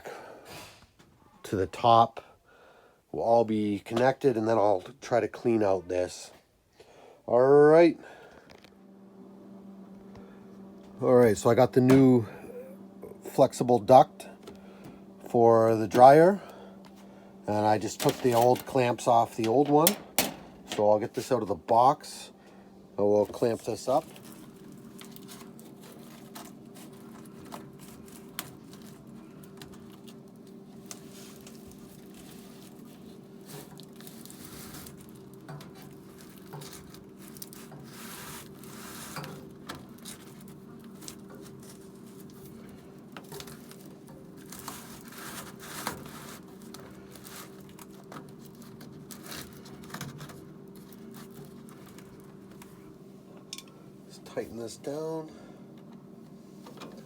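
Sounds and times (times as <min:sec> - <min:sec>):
steady low hum: 0:00.0 - 0:57.0
crinkling and tearing packaging: 0:17.8 - 0:20.0, 0:23.4 - 0:52.7
sharp clicks and knocks: 0:19.4 - 0:20.9.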